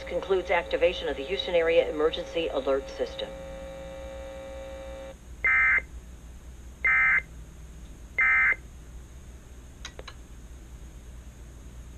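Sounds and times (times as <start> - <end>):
buzzy digital data bursts: 0.0 - 5.2.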